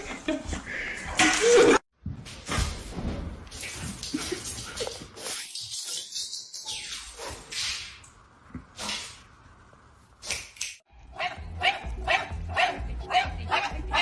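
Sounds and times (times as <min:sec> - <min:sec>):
dog barking: 0:11.2 - 0:14.0.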